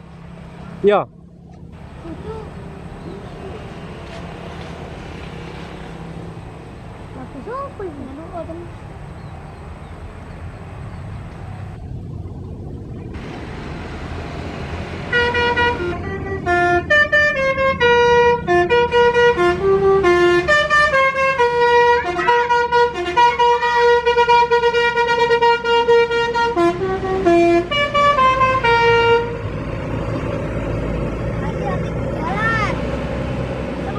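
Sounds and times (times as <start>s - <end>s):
bus engine rumble: 0.0s - 33.9s
musical air horn playing a tune: 15.1s - 29.5s.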